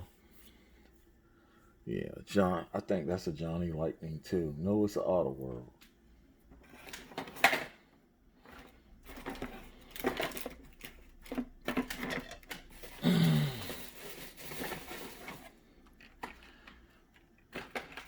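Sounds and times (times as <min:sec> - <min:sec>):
plastic packaging crinkling: 0:09.0 - 0:16.8.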